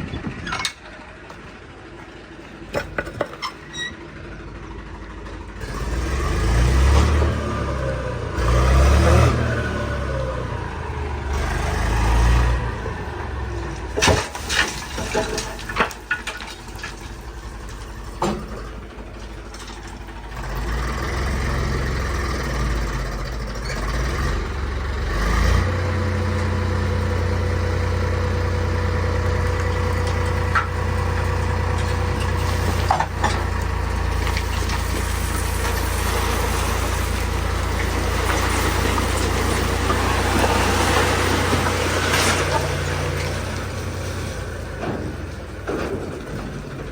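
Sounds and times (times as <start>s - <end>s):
diesel engine running: 0.0s - 46.9s
sharp knocks and clanks: 2.7s - 3.7s, 44.6s - 46.9s.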